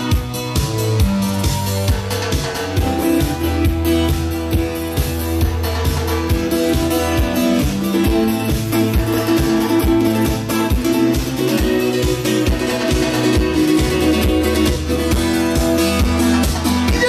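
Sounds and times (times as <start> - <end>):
upbeat instrumental music: 0.0 - 17.0.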